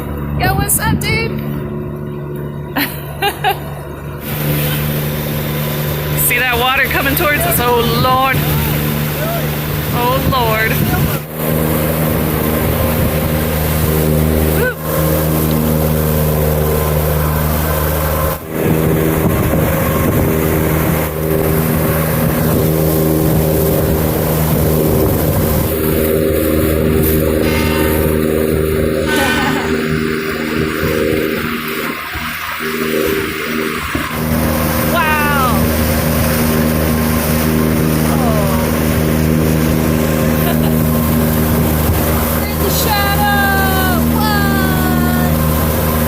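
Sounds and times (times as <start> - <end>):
wind noise on microphone: 0.0 - 1.8, 4.2 - 46.0
boat engine running: 0.0 - 46.0
water noise: 0.0 - 46.0
person crying out: 14.5 - 14.9, 27.4 - 28.1, 29.0 - 29.9, 34.9 - 35.6, 43.2 - 45.4.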